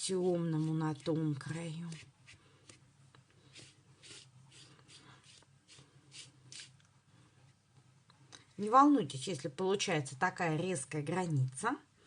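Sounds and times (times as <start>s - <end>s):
paintbrush swishing on paper: 3.5s - 6.8s.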